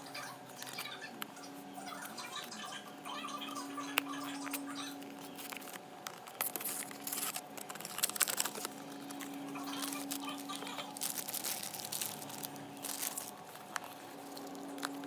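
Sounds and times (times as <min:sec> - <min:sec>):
faint steady hum: 0:00.0 - 0:15.0
packaging rustling: 0:03.6 - 0:15.0.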